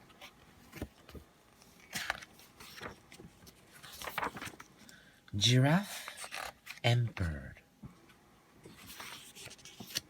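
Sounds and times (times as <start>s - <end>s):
book pages rustling: 0.0s - 4.9s, 6.0s - 7.3s, 8.7s - 10.0s.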